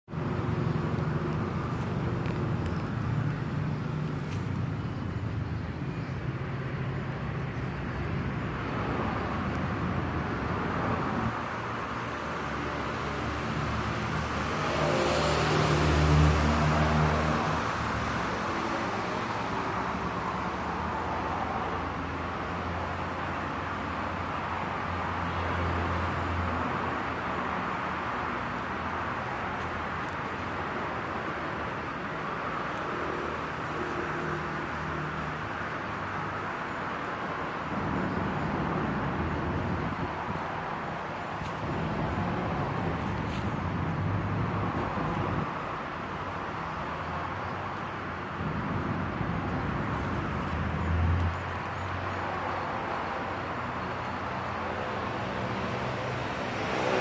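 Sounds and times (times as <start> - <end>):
road traffic noise: 0.0 - 57.0.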